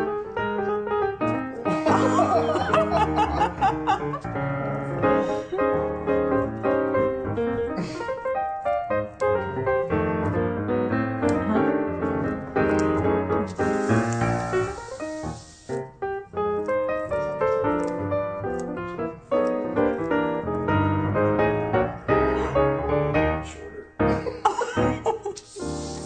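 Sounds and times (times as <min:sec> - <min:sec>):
piano background music: 0:00.0 - 0:26.0
hiss: 0:13.5 - 0:15.9, 0:25.3 - 0:26.0.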